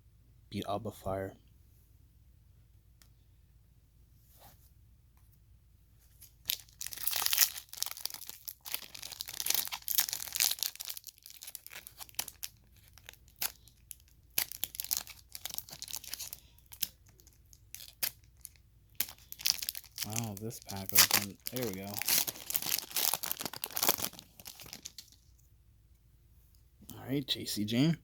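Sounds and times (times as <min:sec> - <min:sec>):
plastic wrapper tearing and crinkling: 0:06.2 - 0:25.3.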